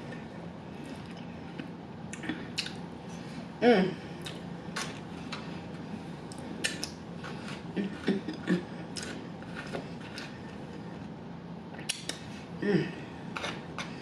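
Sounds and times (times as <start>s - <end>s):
chewing: 6.3s - 10.8s.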